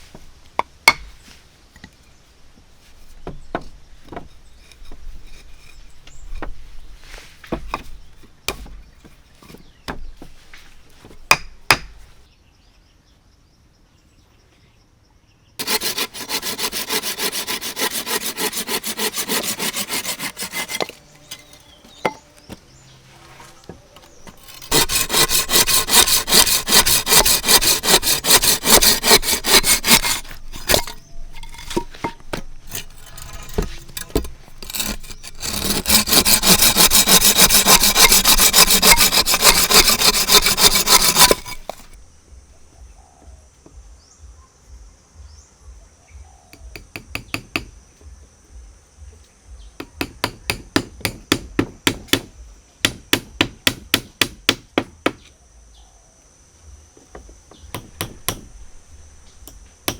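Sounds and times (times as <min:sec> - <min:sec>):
knocks on wood: 0:03.2 - 0:04.4, 0:09.9 - 0:10.4, 0:57.1 - 0:58.5
hand saw cutting wood: 0:15.6 - 0:22.6, 0:23.4 - 0:42.0.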